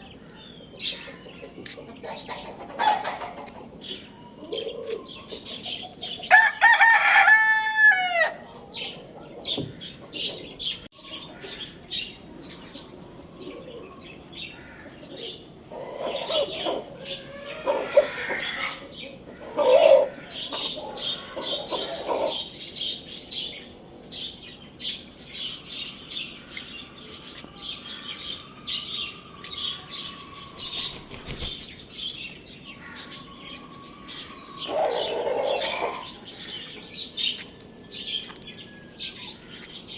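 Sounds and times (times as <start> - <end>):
small birds chirping: 0.0 - 6.5, 8.4 - 39.9
hens clucking: 0.6 - 10.6, 14.9 - 22.4, 32.8 - 36.4
rooster crowing: 6.3 - 8.5
wings flapping: 30.6 - 31.9.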